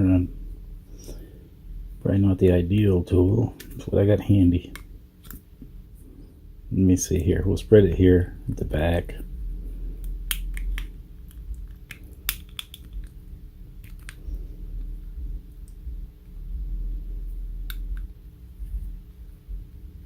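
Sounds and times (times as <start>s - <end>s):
plastic case clicking and snapping: 10.3s - 13.1s.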